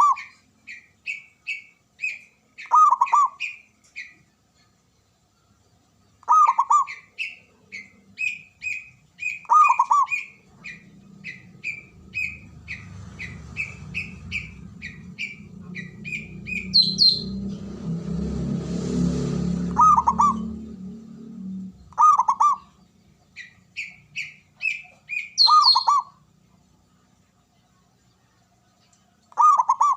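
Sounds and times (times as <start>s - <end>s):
dove cooing: 0.0s - 0.4s, 1.1s - 4.1s, 6.2s - 17.1s, 19.7s - 20.6s, 21.9s - 22.8s, 23.4s - 26.2s, 29.3s - 29.9s
bird chirping: 0.0s - 18.5s, 19.4s - 29.9s
low rumble: 11.0s - 22.0s.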